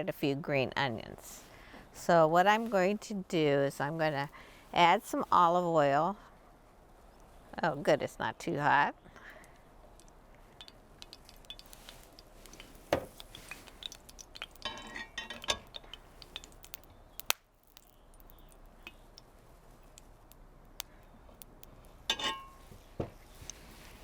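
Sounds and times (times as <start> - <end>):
utensils clinking against a skillet: 10.6 - 16.6, 22.1 - 22.6.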